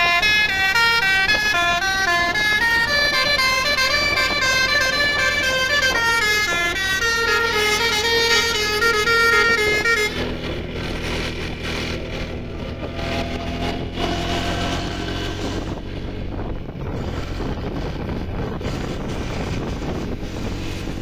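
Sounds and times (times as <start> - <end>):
musical bus horn tune: 0.0 - 11.2.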